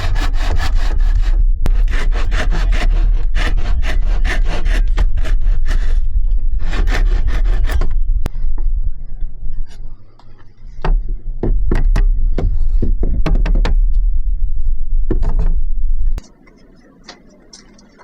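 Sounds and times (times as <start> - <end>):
hand saw cutting wood: 0.0 - 8.0
sharp knocks: 10.8 - 14.0.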